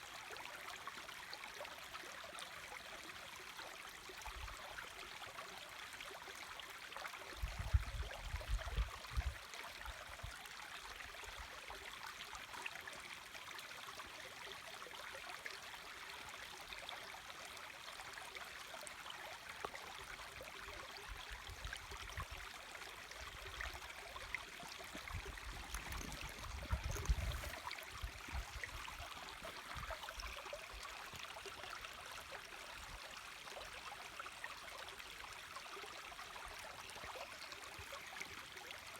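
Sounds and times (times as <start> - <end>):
brook babbling over stones: 0.0 - 38.9.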